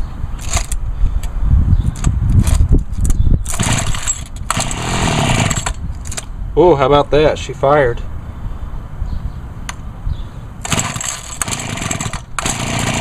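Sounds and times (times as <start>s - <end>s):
recoil starter thuds: 2.0s - 6.3s.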